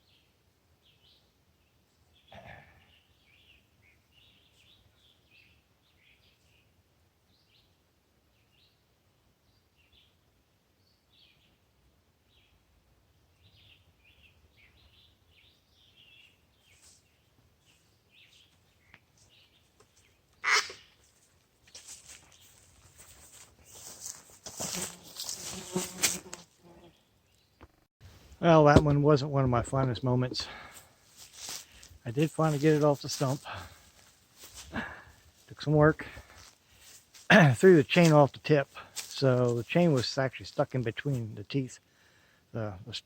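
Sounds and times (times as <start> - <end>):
small birds chirping: 0.0 - 8.8, 13.2 - 24.3.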